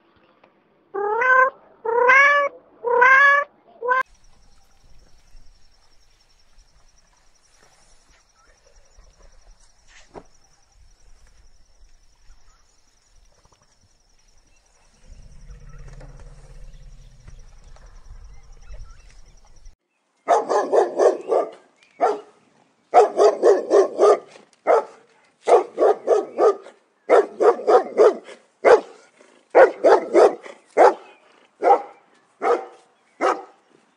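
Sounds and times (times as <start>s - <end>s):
dog barking: 20.3s - 33.6s.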